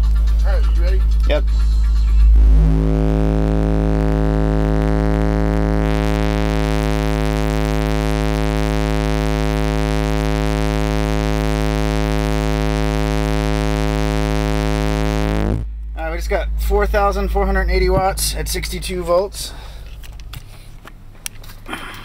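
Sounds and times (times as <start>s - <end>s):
loud buzzy bass test tone: 1.8s - 19.3s.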